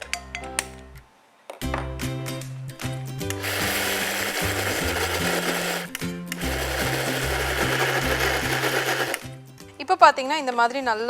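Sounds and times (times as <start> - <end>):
background music: 0.0 - 11.0
mixer grinder running: 3.3 - 9.3.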